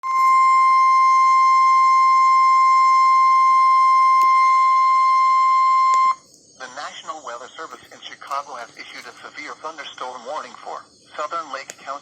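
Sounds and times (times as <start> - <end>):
high-pitched alarm tone: 0.0 - 6.2.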